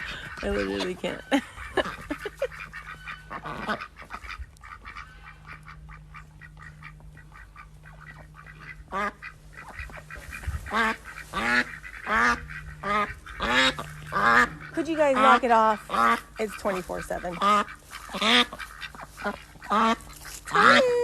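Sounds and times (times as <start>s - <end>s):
ducks quacking: 0.0s - 21.0s.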